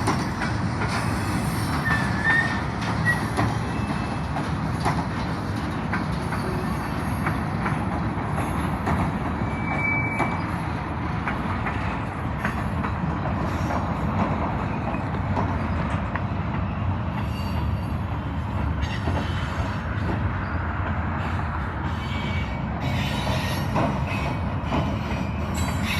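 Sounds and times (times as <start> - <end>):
wheels clicking over rail joints: 0.0 - 17.9
train cars rumbling on rails: 0.0 - 25.9.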